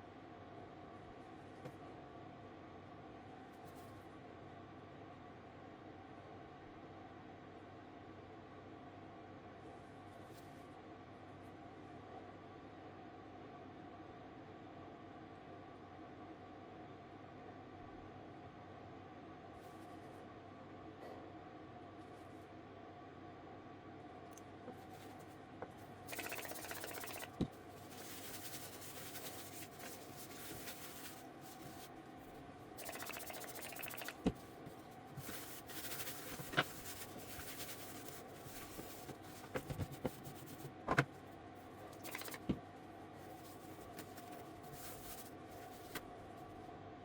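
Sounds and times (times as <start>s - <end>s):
machine hum: 24.3s - 46.7s
sharp clicks: 26.1s - 27.4s, 32.8s - 34.3s, 42.0s - 42.5s.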